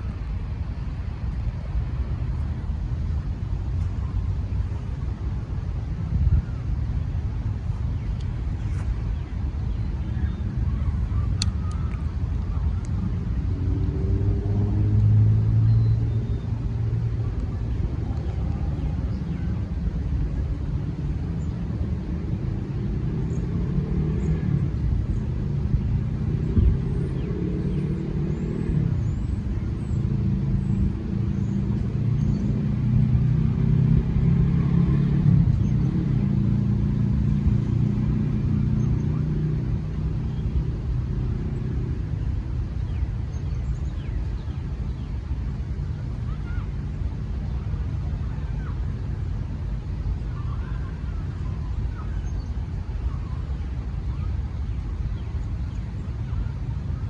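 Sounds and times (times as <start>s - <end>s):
low traffic rumble: 0.0s - 57.0s
vehicle engine passing: 32.0s - 42.4s.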